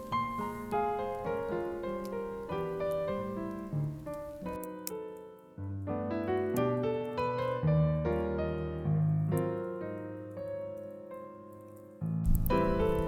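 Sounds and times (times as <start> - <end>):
slow piano music: 0.0 - 13.0.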